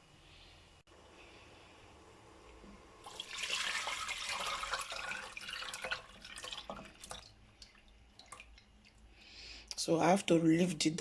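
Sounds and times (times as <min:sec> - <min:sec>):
liquid pouring into a pot: 0:03.0 - 0:09.1.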